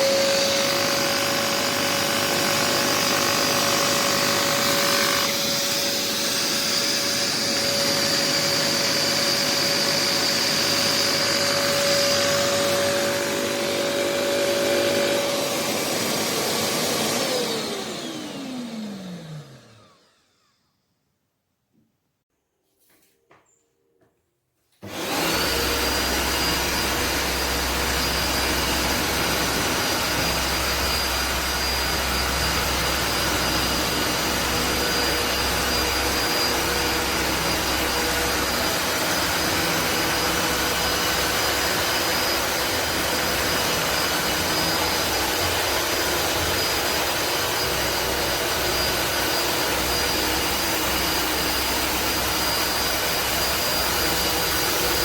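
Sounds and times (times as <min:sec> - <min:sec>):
floor cleaner motor whining: 0:00.0 - 0:20.7, 0:24.8 - 0:55.0.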